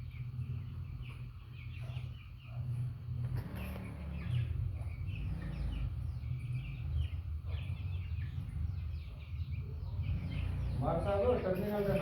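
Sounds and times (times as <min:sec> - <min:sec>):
chickens chirping: 0:00.0 - 0:12.0.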